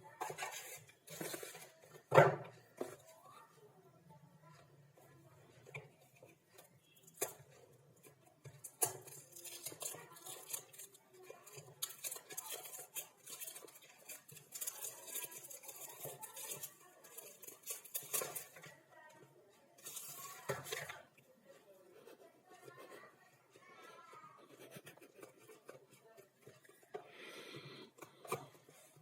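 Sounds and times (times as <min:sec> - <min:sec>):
cardboard and plastic rustling: 0:00.0 - 0:03.3, 0:05.6 - 0:21.2.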